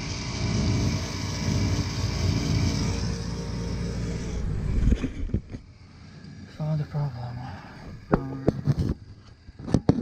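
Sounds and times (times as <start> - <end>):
furnace fan humming: 0.0 - 10.0.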